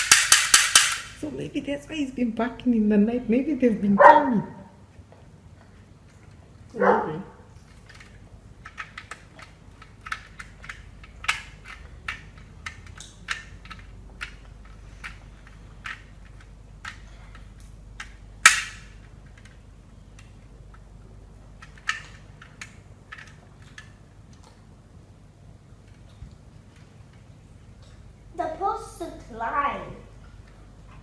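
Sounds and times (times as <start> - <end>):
sharp clicks and knocks: 0.0 - 1.2, 7.6 - 24.6.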